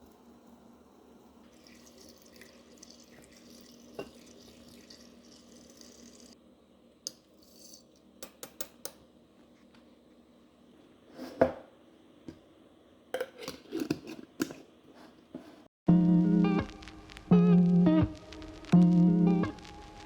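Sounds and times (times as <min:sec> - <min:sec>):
faint steady hum: 0:00.0 - 0:20.0
kitchen tap running: 0:01.4 - 0:06.4.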